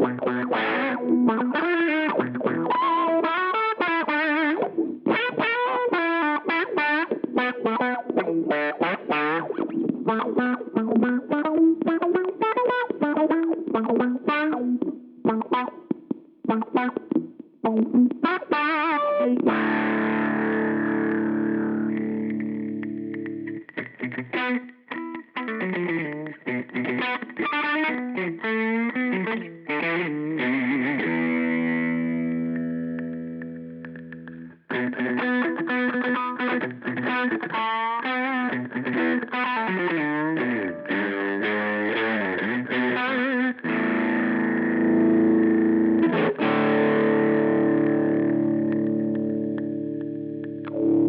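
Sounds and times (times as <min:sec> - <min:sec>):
fuzz electric guitar riff: 0:00.0 - 0:51.0.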